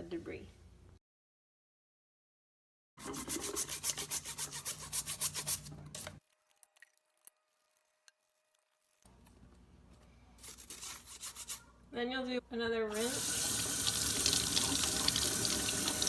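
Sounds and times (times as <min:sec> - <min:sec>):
toothbrush scrubbing filter: 0:03.0 - 0:06.2.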